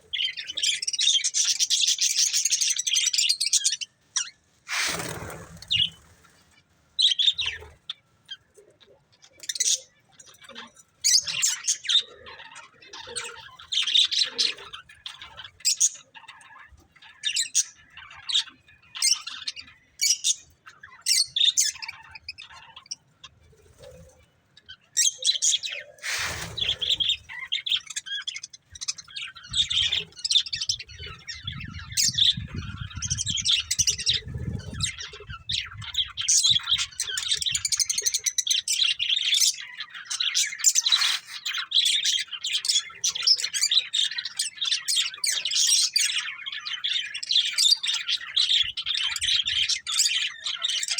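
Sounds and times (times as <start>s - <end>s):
budgerigars chirping: 25.0s - 50.9s.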